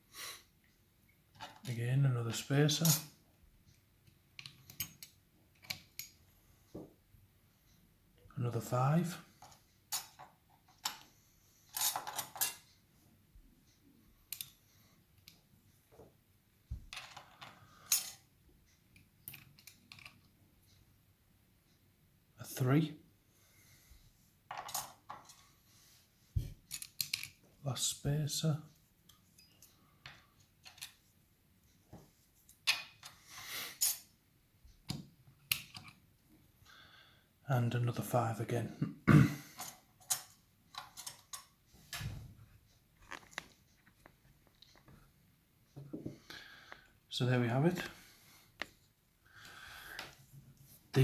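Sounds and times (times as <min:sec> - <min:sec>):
metal lock parts clinking: 0:09.4 - 0:11.1, 0:11.7 - 0:12.7, 0:17.0 - 0:18.2, 0:19.2 - 0:20.3, 0:24.6 - 0:25.4, 0:26.6 - 0:27.4, 0:30.6 - 0:31.0, 0:39.6 - 0:41.6
small metal parts clicking: 0:19.2 - 0:20.3, 0:26.7 - 0:27.4.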